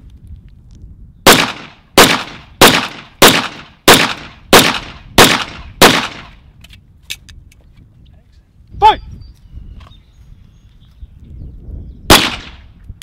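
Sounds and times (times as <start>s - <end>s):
pistol shots with echo: 1.2s - 6.4s, 12.1s - 12.6s.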